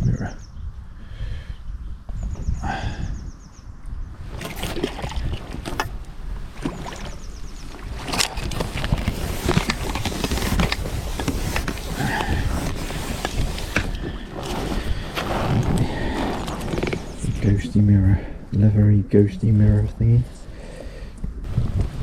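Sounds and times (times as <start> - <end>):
wind rumble on microphone: 0.0 - 22.0
fish splashing in water: 4.3 - 10.0.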